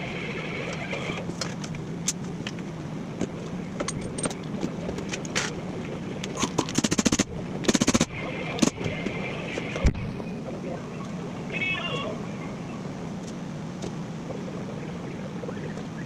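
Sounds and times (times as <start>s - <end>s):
steady low hum: 0.0s - 16.0s
rapid clicking: 6.2s - 8.8s.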